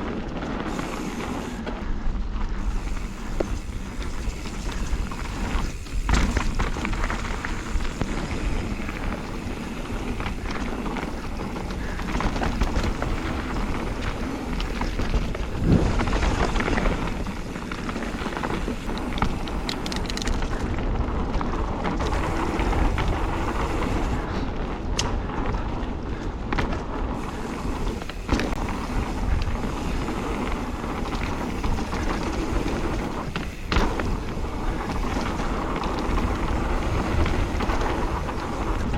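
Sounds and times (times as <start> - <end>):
bike tyres rolling on dirt: 0.0 - 38.9
bike knocking over bumps: 2.6 - 20.8, 26.5 - 38.9.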